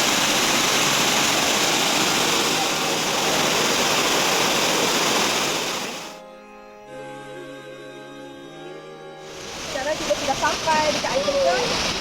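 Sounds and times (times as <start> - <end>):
waterfall rushing: 0.0 - 6.2, 9.3 - 12.0.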